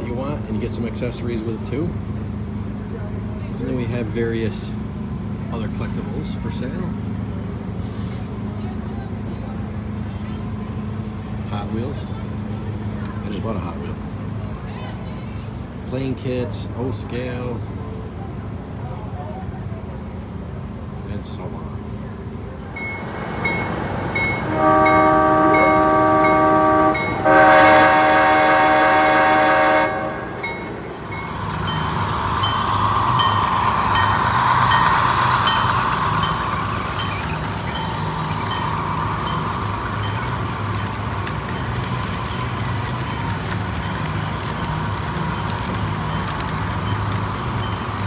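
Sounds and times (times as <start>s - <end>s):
model train bell ringing: 22.7s - 48.0s
air horn blasts: 22.8s - 32.1s.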